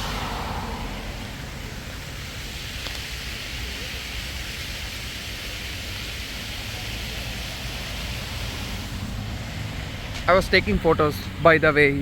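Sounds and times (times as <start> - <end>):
low rumble: 0.0 - 2.2
outdoor background hiss: 0.0 - 12.0.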